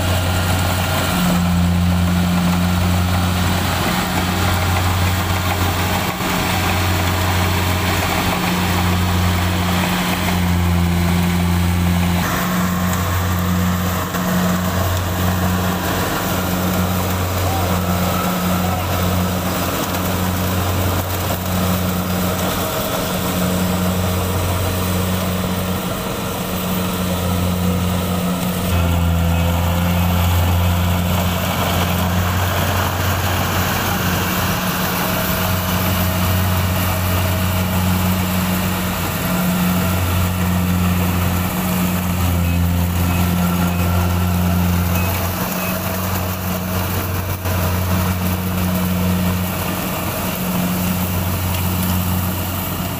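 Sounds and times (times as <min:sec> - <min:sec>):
combine harvester diesel engine: 0:00.0 - 0:52.9.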